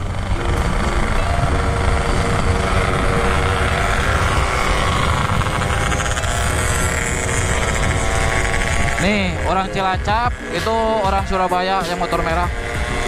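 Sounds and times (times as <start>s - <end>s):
motorcycle engine running: 0.0s - 13.0s
wind rumble on microphone: 0.0s - 13.0s.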